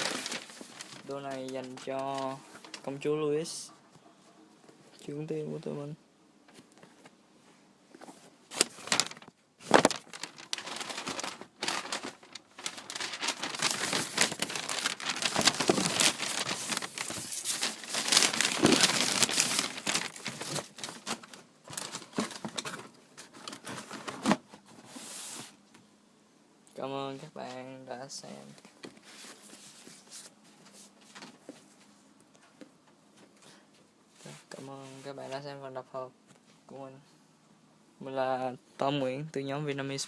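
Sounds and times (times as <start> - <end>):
paper crinkling and rustling: 0.0 - 3.2, 7.9 - 25.5, 28.2 - 31.9.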